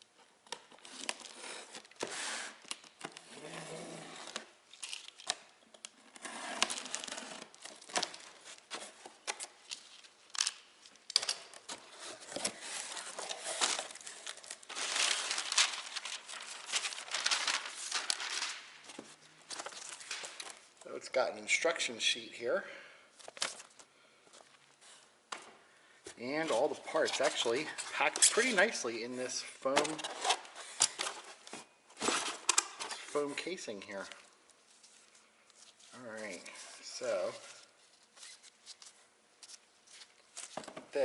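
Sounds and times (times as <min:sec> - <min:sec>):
cardboard packaging crinkling and tearing: 0:00.8 - 0:20.7.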